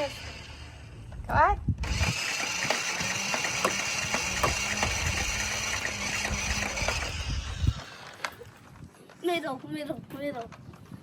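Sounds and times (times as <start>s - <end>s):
toy blaster motor whir: 0.0s - 1.2s, 1.8s - 8.6s.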